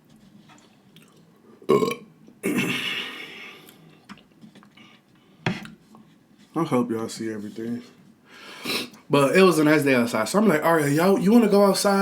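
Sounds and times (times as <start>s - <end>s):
man burping: 1.7s - 3.4s.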